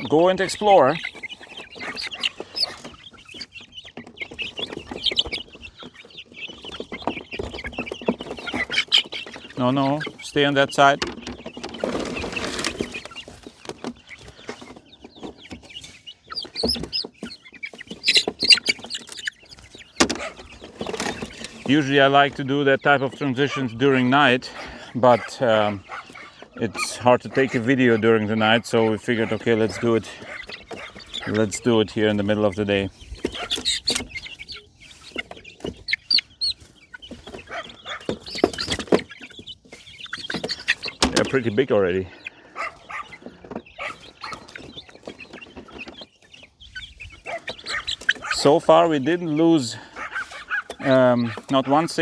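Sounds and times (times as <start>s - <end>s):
young chickens peeping and clucking: 0.0s - 52.0s.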